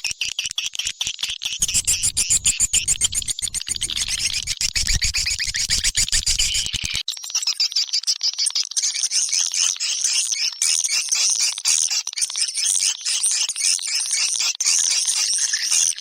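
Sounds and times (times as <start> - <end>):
swiftlets twittering and clicking: 0.0 - 7.0.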